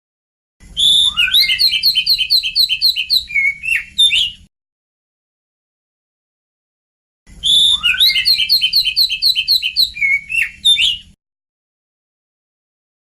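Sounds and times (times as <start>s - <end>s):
bird song: 0.7s - 4.5s, 7.4s - 11.2s.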